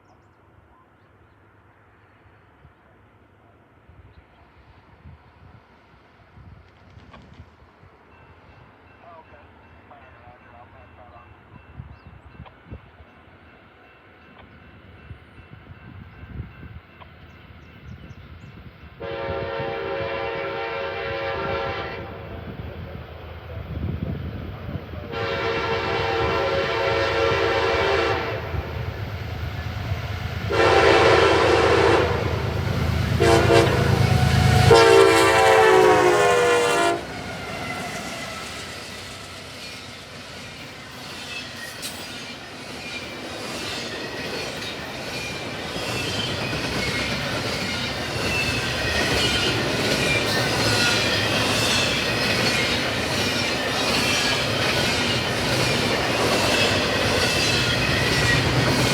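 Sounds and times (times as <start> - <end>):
locomotive air horn blasts: 19.0 - 22.3, 25.1 - 28.7, 30.5 - 38.2
train wheels clicking over rails: 37.1 - 58.9.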